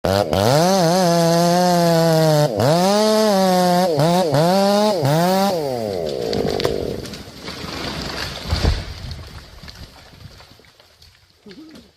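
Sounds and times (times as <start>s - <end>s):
chainsaw engine revving: 0.0s - 8.4s.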